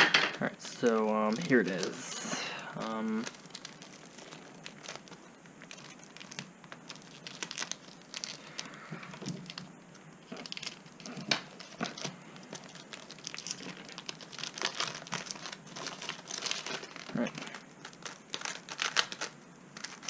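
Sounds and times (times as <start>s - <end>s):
plastic packaging crinkling: 0.4s - 20.0s.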